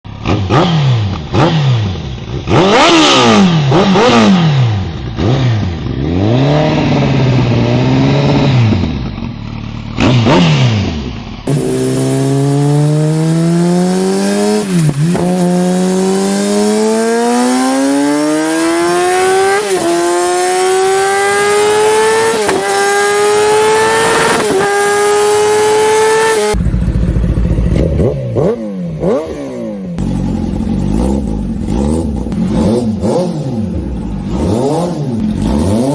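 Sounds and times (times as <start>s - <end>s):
motorbike accelerating through gears: 0.1s - 35.9s
sport bike engine revving: 0.1s - 35.9s.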